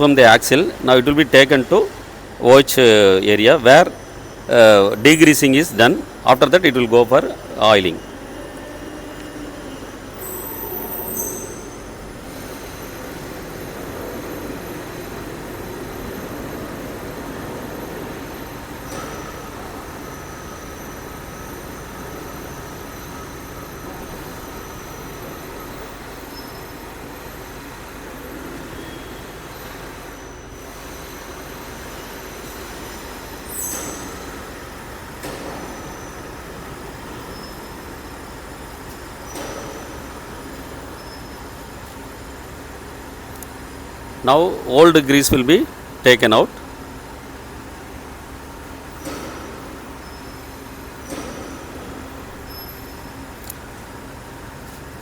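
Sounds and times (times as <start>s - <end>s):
workshop machinery noise: 0.0s - 55.0s
high metallic squeals: 3.4s - 13.7s, 32.4s - 34.9s.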